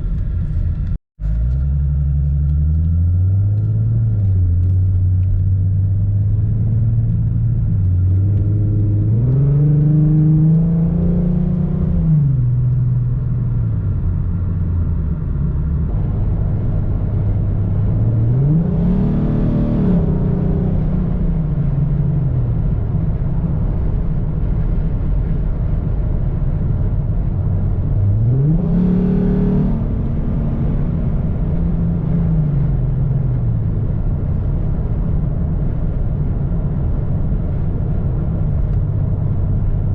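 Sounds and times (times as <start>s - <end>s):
car engine revving: 0.0s - 23.7s, 27.6s - 35.2s.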